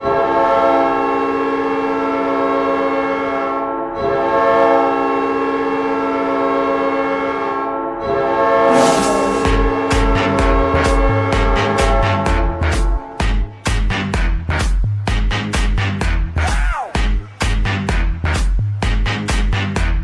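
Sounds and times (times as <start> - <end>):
multi-tone air horn blasts: 0.0 - 14.8.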